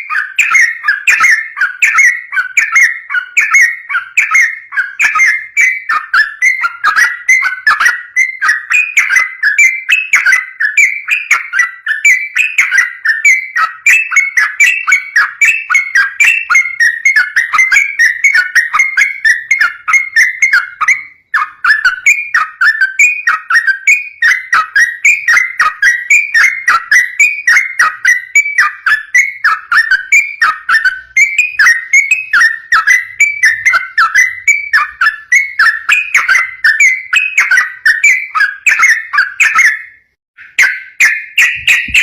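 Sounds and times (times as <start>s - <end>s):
bird singing whistled phrases: 0.0s - 42.0s.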